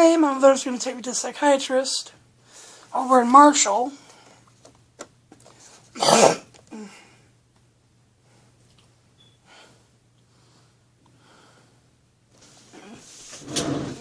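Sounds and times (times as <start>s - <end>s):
man breathing unevenly: 9.4s - 12.0s.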